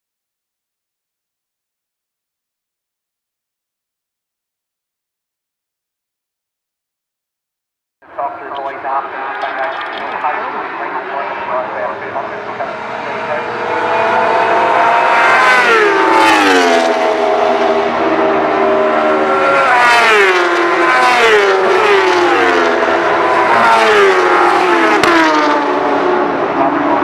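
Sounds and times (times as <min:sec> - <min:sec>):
racing motorcycles passing at high revs: 0:09.1 - 0:27.0.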